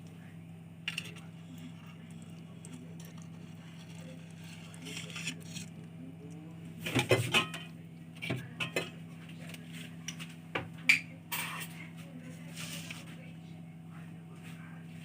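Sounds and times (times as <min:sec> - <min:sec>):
steady low hum: 0:00.0 - 0:15.0
utensil scraping baking tray: 0:01.0 - 0:05.8, 0:12.4 - 0:13.1.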